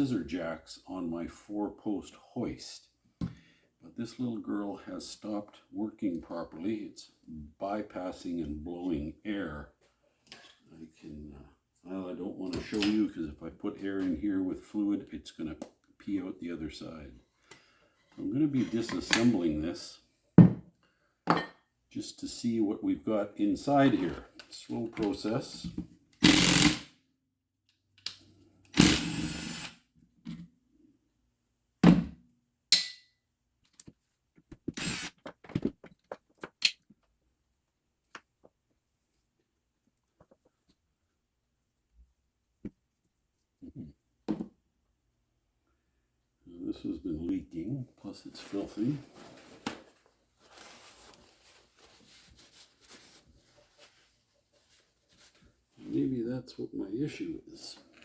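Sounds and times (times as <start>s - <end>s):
small clicks and taps of tools: 27.7s - 28.3s, 33.6s - 34.7s.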